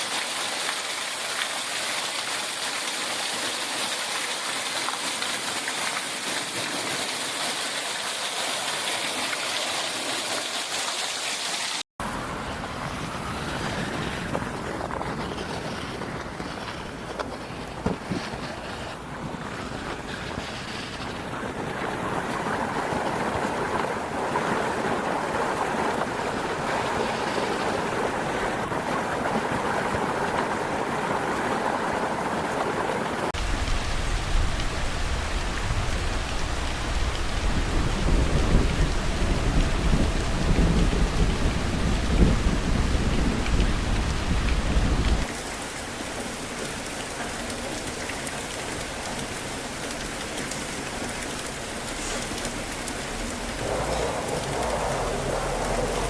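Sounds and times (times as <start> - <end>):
heavy rain hiss: 45.2 - 56.0
deep rumble: 52.7 - 56.0.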